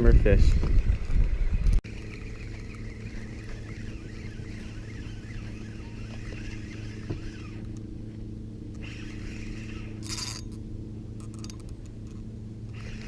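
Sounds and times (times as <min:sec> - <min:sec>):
boat engine idling: 0:01.0 - 0:13.0.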